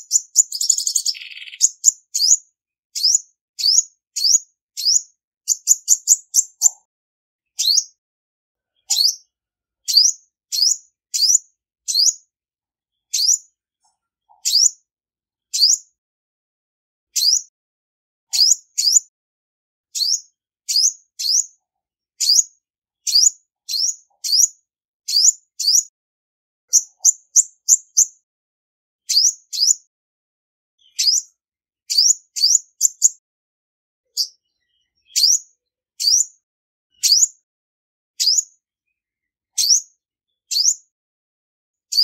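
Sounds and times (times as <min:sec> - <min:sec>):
bird chirping: 0:00.0 - 0:08.0, 0:08.6 - 0:12.3, 0:12.9 - 0:14.8, 0:15.5 - 0:15.9, 0:17.1 - 0:17.5, 0:18.3 - 0:19.1, 0:19.9 - 0:21.6, 0:22.2 - 0:26.0, 0:26.7 - 0:28.2, 0:29.1 - 0:29.8, 0:30.8 - 0:33.2, 0:34.0 - 0:37.4, 0:38.2 - 0:40.9.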